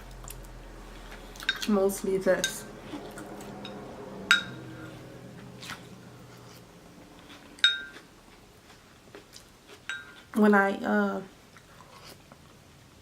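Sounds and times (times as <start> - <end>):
metal spoon clinking on ceramic dish: 7.6 - 8.0, 9.9 - 10.2.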